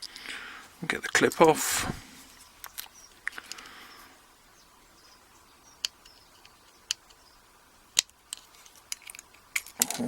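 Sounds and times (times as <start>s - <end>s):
small metallic clicks: 8.0s - 10.0s.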